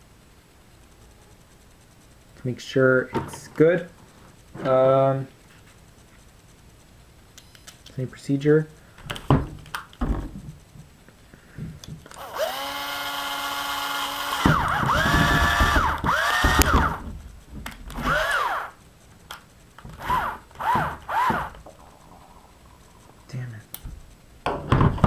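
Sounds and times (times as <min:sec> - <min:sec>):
power drill driving screws: 0:12.1 - 0:17.1, 0:17.9 - 0:18.8, 0:19.9 - 0:21.6.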